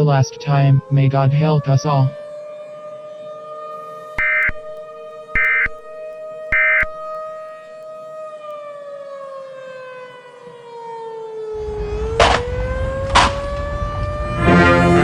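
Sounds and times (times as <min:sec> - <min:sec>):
siren rising and falling: 0:00.0 - 0:15.0
short beep: 0:04.2 - 0:04.6, 0:06.6 - 0:06.9
low rumble: 0:11.6 - 0:15.0
loud thumps: 0:12.0 - 0:14.0.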